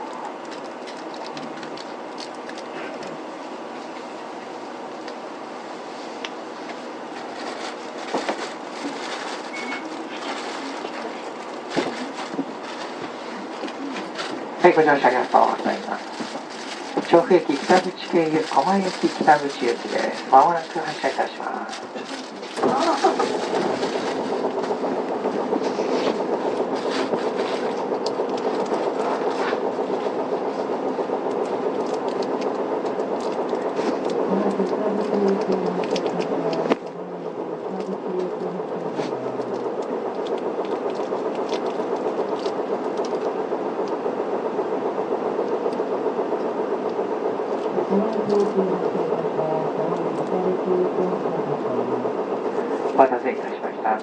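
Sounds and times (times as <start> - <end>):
bus diesel engine idling: 1.9 - 54.0
small clicks and rattles: 39.4 - 44.0.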